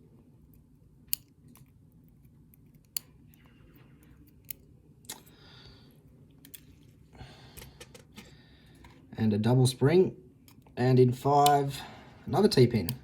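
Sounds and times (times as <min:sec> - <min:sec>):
lock pins clicking: 0:06.4 - 0:06.8.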